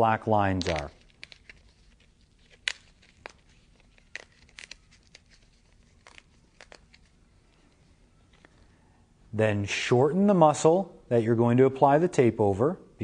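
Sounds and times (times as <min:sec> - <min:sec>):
tape crackling and ticking: 0:00.5 - 0:08.6.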